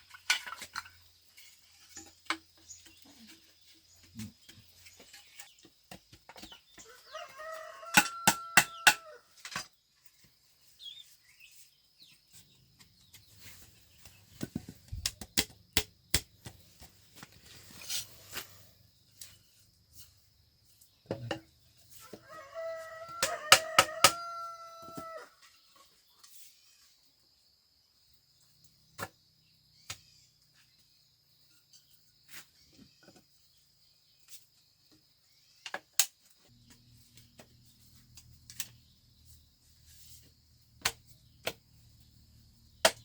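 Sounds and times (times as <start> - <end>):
rooster crowing: 6.8 - 9.3, 22.0 - 25.4.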